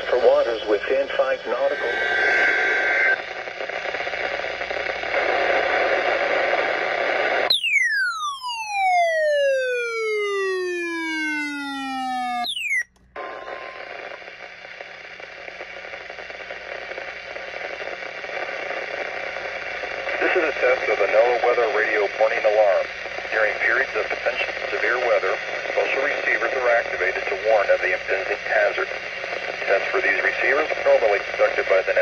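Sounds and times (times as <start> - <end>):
radio static hiss: 0.0 - 7.5, 8.7 - 32.0
electronic tone gliding downward: 7.5 - 12.9.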